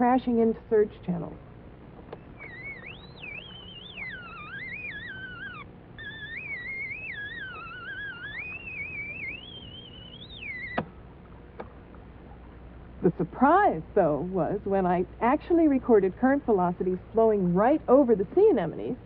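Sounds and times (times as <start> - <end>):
wavering whistling tone: 2.2 - 11.1.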